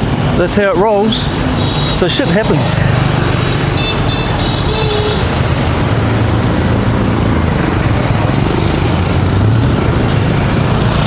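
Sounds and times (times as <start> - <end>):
motorbike and car engines: 0.0 - 11.0
road traffic noise: 0.0 - 11.0.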